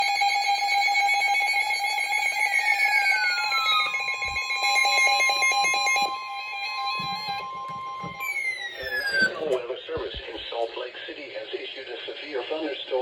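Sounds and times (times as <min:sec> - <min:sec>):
pulsing electronic alarm tone: 0:00.8 - 0:09.6.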